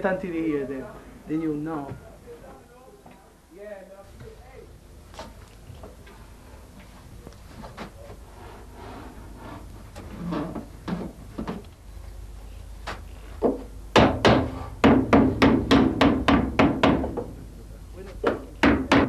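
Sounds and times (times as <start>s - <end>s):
knocks on hollow wood: 13.4s - 17.4s, 18.2s - 19.0s.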